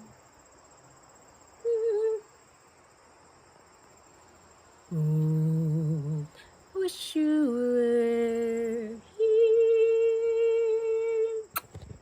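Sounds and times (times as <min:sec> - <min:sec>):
faint high-pitched whine: 0:00.0 - 0:12.0
person humming: 0:01.6 - 0:02.2, 0:04.9 - 0:06.5, 0:07.6 - 0:11.7.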